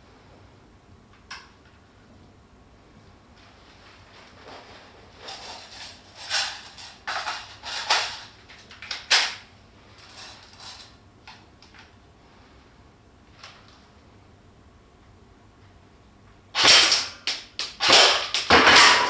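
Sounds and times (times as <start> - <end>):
toy airsoft gun shots: 16.6 - 19.0.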